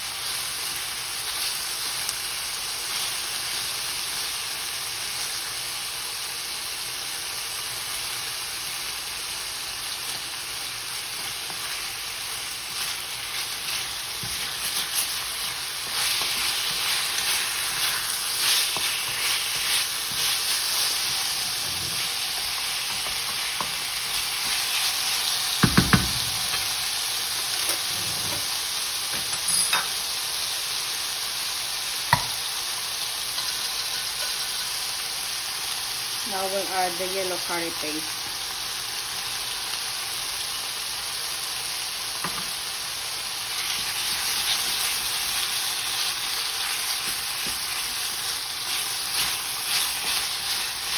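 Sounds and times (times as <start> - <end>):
chicken sizzling in hot oil: 0.0 - 50.9
utensil scraping a pan: 12.7 - 24.6.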